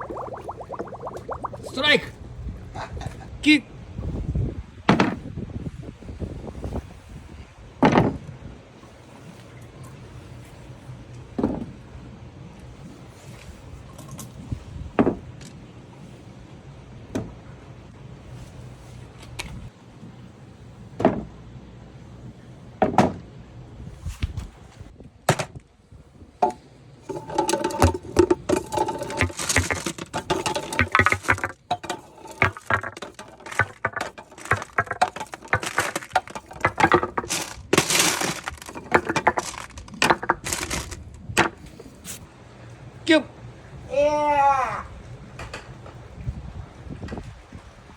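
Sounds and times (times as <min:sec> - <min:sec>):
balls rolling down wooden marble run: 0:26.4 - 0:41.0.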